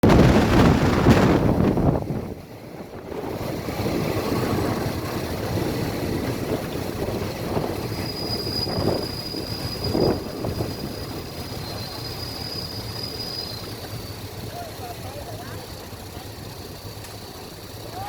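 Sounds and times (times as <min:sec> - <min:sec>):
loud rush of noise: 0:00.0 - 0:11.7
train rumbling on track: 0:00.0 - 0:18.0
high squeal: 0:07.3 - 0:14.7.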